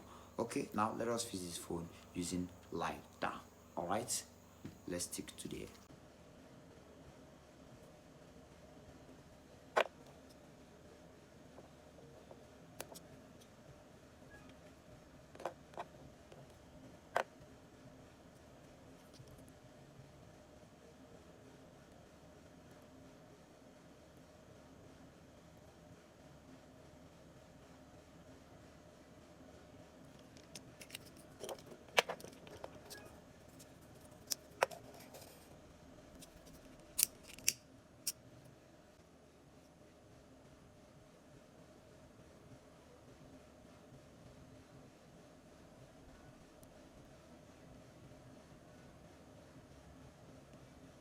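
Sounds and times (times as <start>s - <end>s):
tools clicking and tapping: 36.2s - 37.6s.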